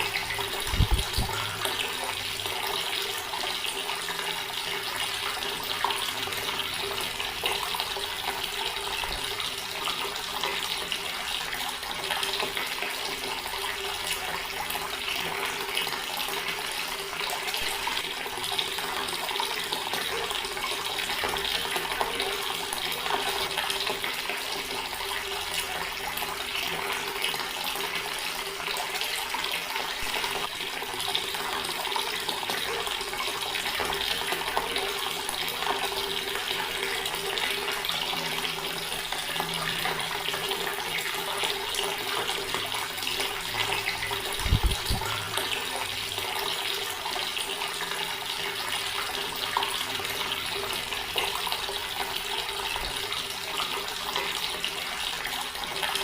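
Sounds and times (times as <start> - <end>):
tap water splashing into basin: 0.0 - 56.0.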